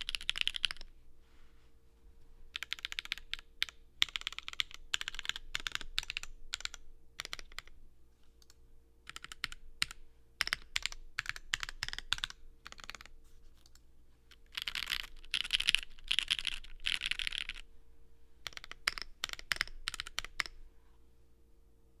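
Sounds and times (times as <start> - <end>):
mechanical keyboard typing: 0.0 - 0.9, 2.6 - 7.7, 8.4 - 17.6, 18.4 - 20.6.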